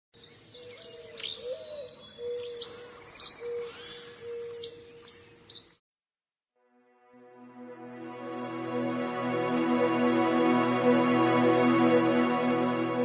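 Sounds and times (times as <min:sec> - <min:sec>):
birds chirping: 0:00.2 - 0:05.8.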